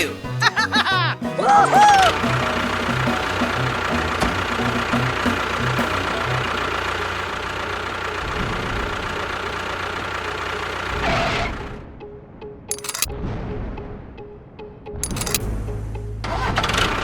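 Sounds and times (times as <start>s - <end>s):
small engine running: 1.8s - 11.8s.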